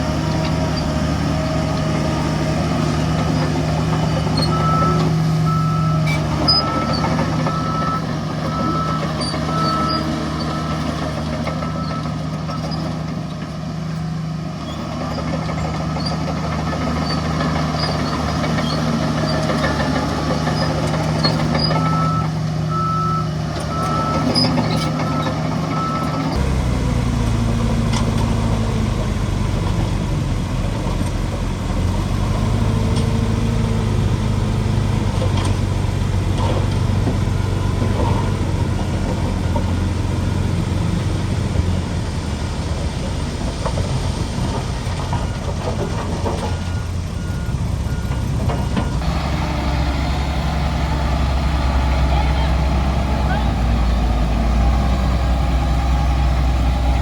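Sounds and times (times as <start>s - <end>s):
diesel engine under load: 0.0s - 57.0s
heavy diesel machinery running: 0.0s - 57.0s
reversing alarm beeping: 4.1s - 12.7s, 21.2s - 28.6s, 46.4s - 51.8s.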